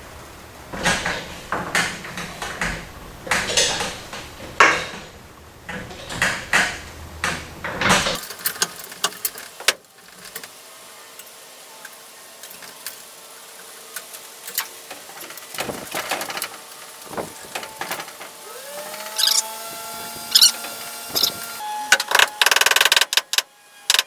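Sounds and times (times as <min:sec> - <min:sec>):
sheet metal scraping against siding: 0:00.0 - 0:09.6, 0:14.7 - 0:24.0.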